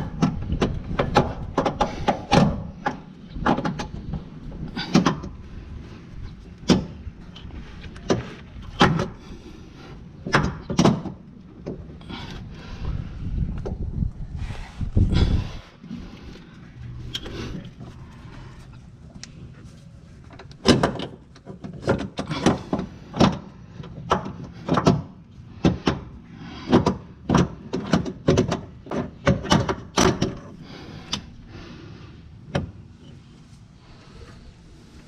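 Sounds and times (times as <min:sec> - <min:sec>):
sharp metal knocks and clunks: 0:00.0 - 0:05.4, 0:06.6 - 0:07.0, 0:07.9 - 0:09.2, 0:10.2 - 0:11.8, 0:20.4 - 0:26.1, 0:26.7 - 0:31.2.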